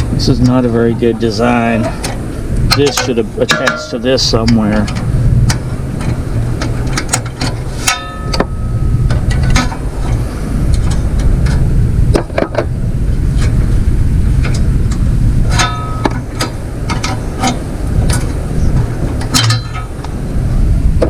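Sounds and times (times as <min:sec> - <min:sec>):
steady low rumble: 0:00.0 - 0:21.0
hand tools clicking on metal: 0:01.8 - 0:08.5, 0:19.1 - 0:20.1
ringing metal clink: 0:02.7 - 0:04.6, 0:07.8 - 0:08.9, 0:19.3 - 0:20.0.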